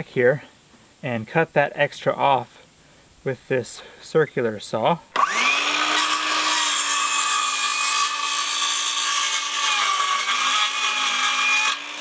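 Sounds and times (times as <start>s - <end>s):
circular saw cutting wood: 5.2s - 12.0s.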